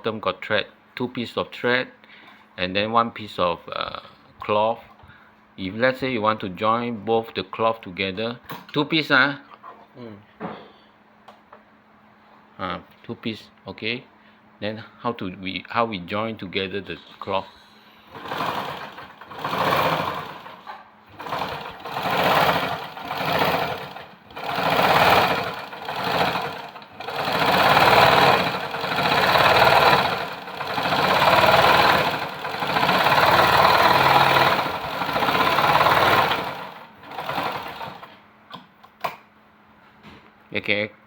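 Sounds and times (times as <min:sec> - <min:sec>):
sewing machine stitching: 0:18.1 - 0:38.2.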